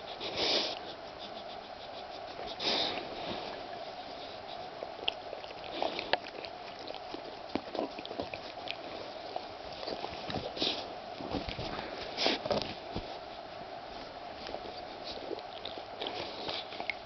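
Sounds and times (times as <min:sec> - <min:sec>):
breathy sniff: 0:00.0 - 0:04.8, 0:11.7 - 0:12.5
pet licking fur: 0:00.0 - 0:10.9.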